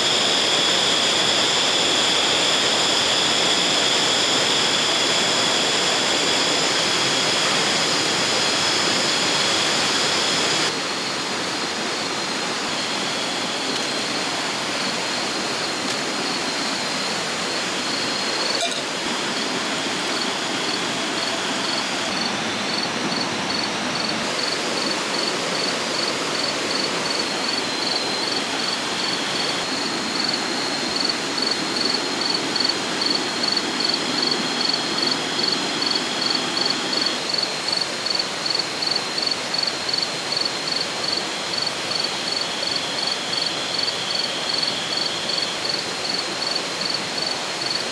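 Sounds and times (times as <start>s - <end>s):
insects trilling: 0.0s - 47.9s
river water rushing: 0.0s - 47.9s
cricket chirping: 10.3s - 47.9s.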